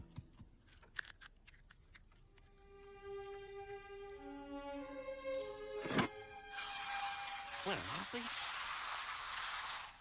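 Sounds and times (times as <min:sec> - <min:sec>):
orchestral bowed strings: 0:02.5 - 0:08.5.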